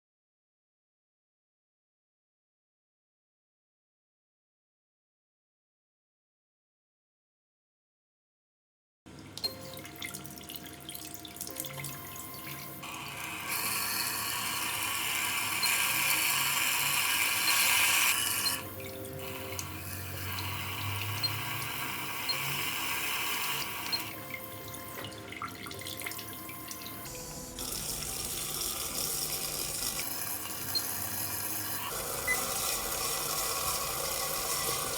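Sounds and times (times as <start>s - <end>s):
water running and spraying: 11.7s - 34.9s.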